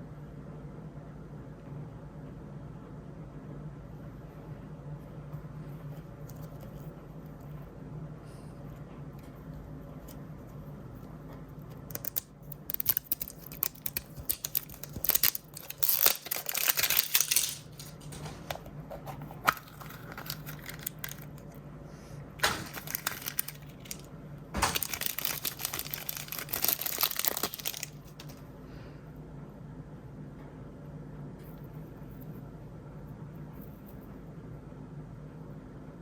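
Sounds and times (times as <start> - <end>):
faint steady hum: 0.0 - 36.0
scattered clicks: 11.9 - 18.0
plastic packaging crinkling: 11.9 - 21.6, 22.4 - 28.4.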